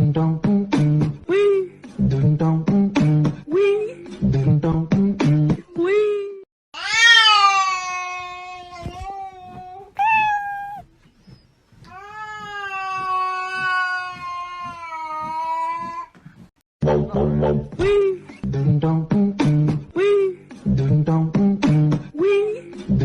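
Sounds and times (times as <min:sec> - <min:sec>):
cat yowling: 0:10.0 - 0:10.8.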